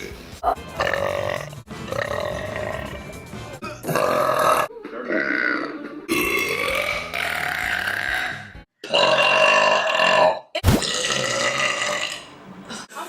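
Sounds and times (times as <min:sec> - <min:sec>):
woman burping: 0:03.6 - 0:12.9.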